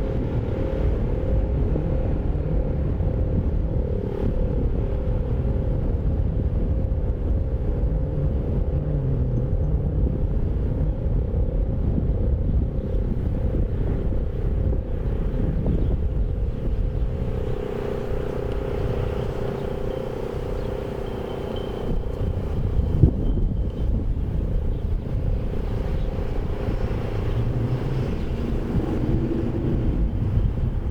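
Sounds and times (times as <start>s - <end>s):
heavy low rumble: 0.0s - 30.9s
tornado siren steady tone: 0.0s - 30.9s.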